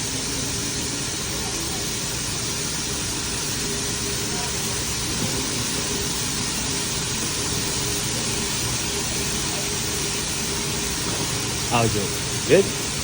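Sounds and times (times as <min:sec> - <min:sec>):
exhaust hood hissing and humming: 0:00.0 - 0:13.0.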